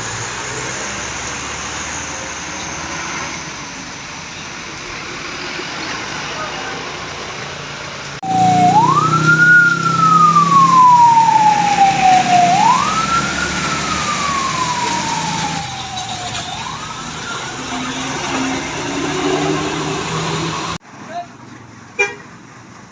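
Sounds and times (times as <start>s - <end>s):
wailing siren: 8.2s - 20.8s.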